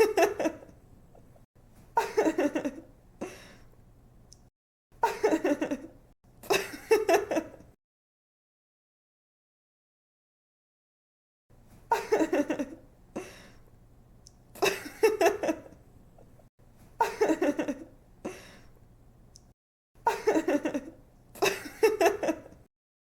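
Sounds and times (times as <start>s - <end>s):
woman giggling: 0.0s - 0.7s, 2.0s - 2.9s, 5.0s - 5.9s, 11.9s - 12.8s, 14.6s - 15.8s, 17.0s - 17.9s, 20.1s - 22.6s.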